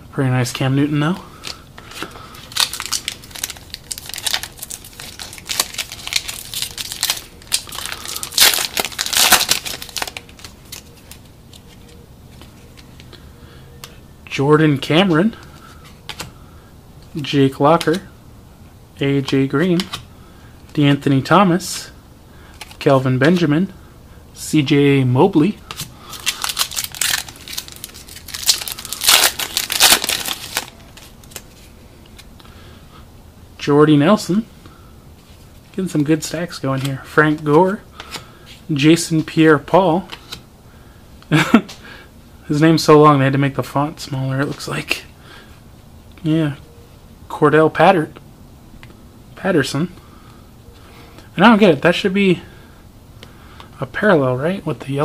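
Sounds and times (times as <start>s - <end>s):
cards and packaging rustling: 1.2s - 13.2s, 22.5s - 23.4s, 25.4s - 32.5s
wrapper crinkling: 1.4s - 12.0s, 26.0s - 32.3s.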